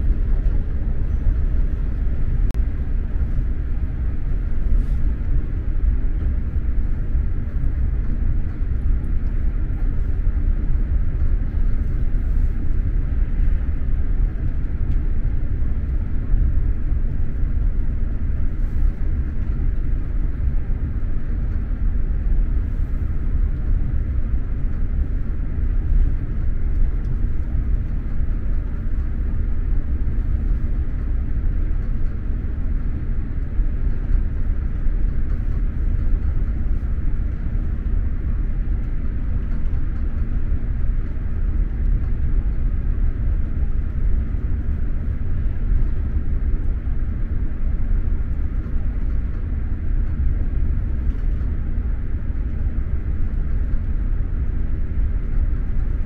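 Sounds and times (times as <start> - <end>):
train wheels rumbling on rails: 0.0 - 56.0.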